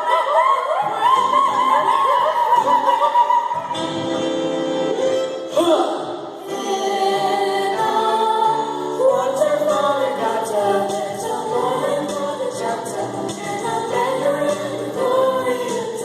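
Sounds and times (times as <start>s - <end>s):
choral singing with held notes: 6.0s - 16.0s.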